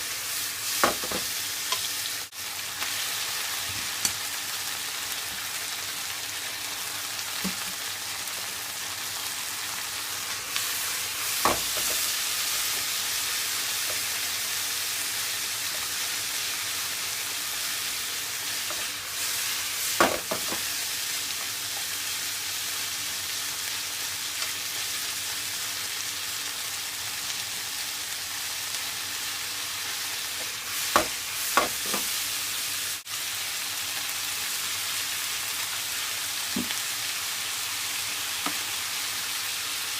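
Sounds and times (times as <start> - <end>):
food sizzling in a frying pan: 0.0 - 39.9.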